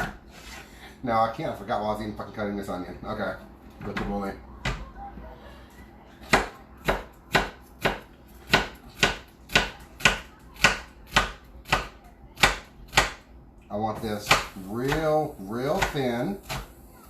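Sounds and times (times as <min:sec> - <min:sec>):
knife chopping on cutting board: 0:06.3 - 0:13.2, 0:14.0 - 0:15.1, 0:15.7 - 0:16.7.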